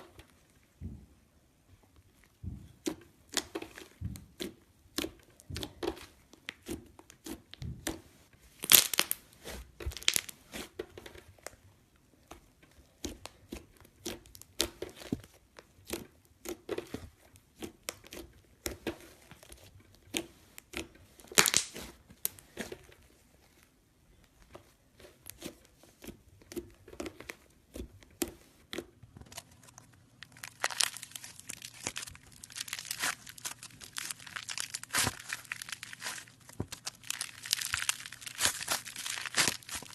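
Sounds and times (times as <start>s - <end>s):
slime squishing and popping: 2.2s - 10.8s, 12.2s - 22.9s, 25.0s - 39.9s.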